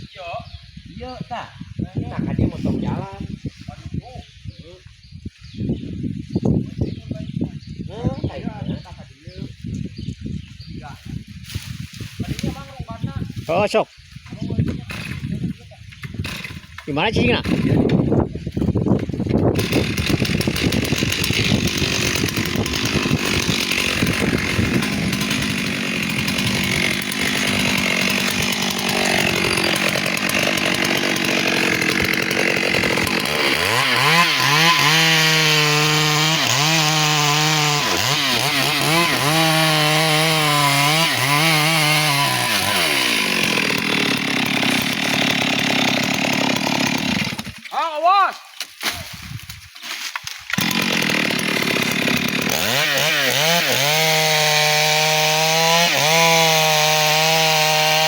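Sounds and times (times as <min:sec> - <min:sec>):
chainsaw cutting into tree: 0:14.5 - 0:47.8, 0:48.8 - 0:58.0.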